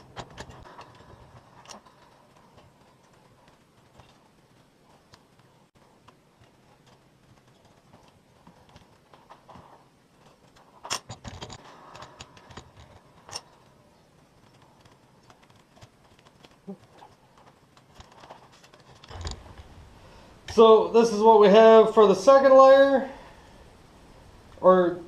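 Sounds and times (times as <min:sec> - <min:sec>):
hard objects clinking and knocking: 0:00.0 - 0:19.7.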